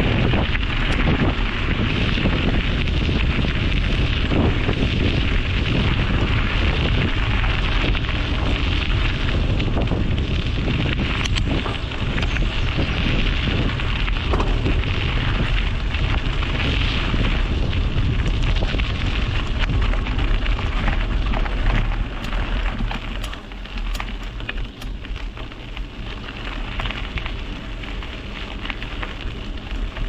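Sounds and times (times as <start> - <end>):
tyre and road rumble: 0.0 - 30.0
wind buffeting microphone: 0.0 - 30.0.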